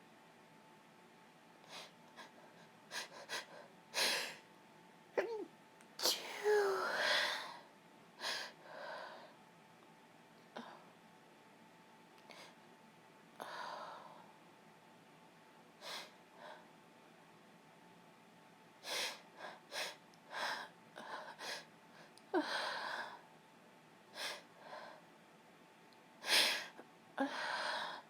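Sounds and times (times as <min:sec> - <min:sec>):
breaths: 0:13.4 - 0:14.3, 0:26.2 - 0:28.0.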